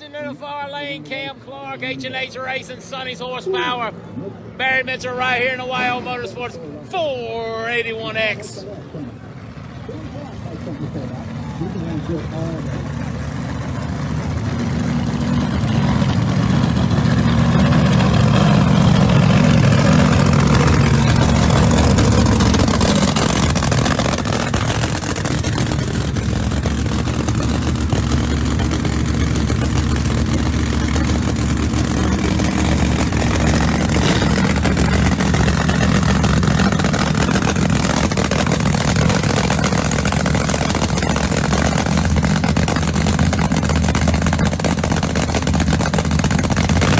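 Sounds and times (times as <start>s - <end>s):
racing car engines running loudly: 0.0s - 46.9s.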